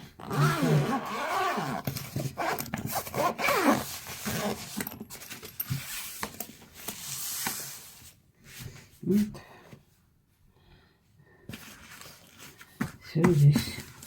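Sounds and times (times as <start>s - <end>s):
zipper being pulled open: 0.2s - 4.8s
case scraping and clicking: 0.2s - 6.4s.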